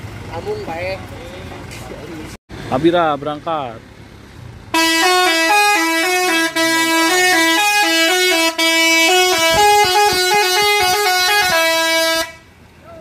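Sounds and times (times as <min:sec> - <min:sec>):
bus musical air horn: 0:04.7 - 0:12.6.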